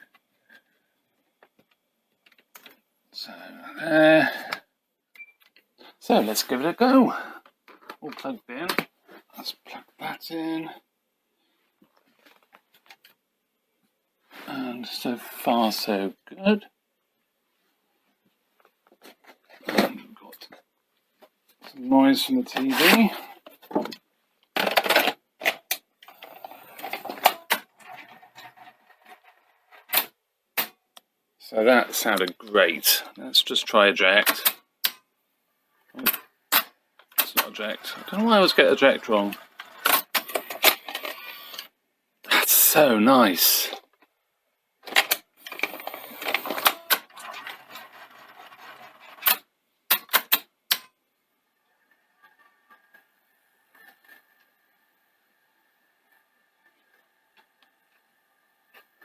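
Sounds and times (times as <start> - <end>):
tape mechanism clicking and clunking: 23.7 - 30.8, 44.8 - 51.0.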